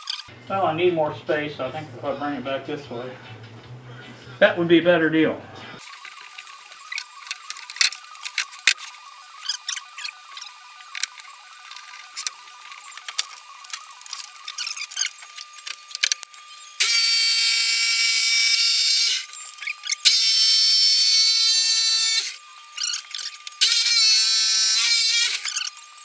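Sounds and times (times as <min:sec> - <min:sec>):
power tool motor whining: 0:05.6 - 0:26.0.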